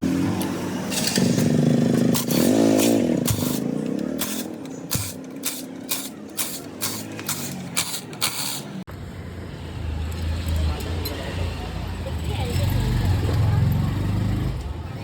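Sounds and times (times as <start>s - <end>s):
motorcycle engine revving: 0.0s - 8.8s.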